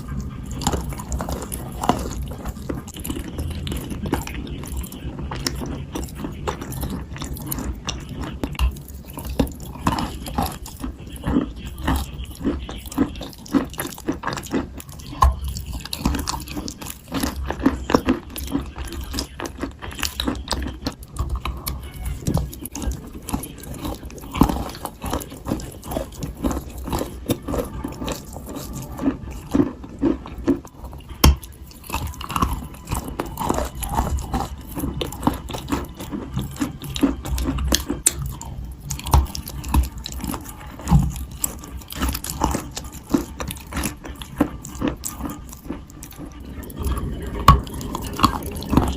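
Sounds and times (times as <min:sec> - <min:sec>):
person chewing dry clay: 0:00.0 - 0:48.9.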